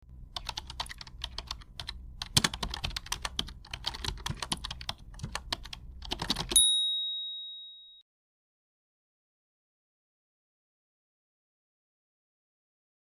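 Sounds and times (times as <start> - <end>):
low steady hum: 0.0 - 6.8.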